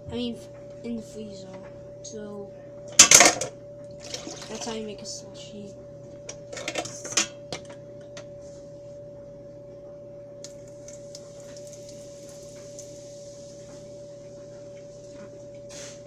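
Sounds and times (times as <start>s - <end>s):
steady hum: 0.0s - 16.0s.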